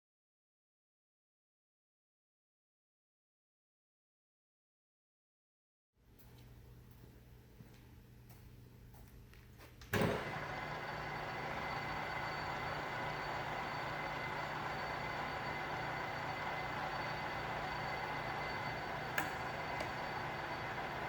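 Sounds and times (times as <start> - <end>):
lathe motor whining and humming: 10.0 - 21.0
lathe starting clunk: 10.0 - 21.0.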